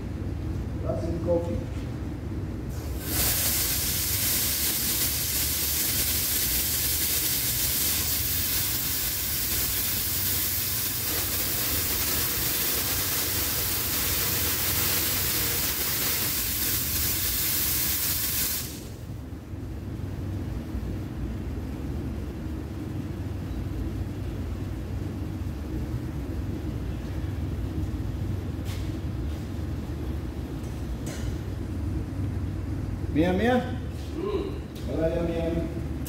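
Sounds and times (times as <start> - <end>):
steam wand hissing: 3.0 - 18.8.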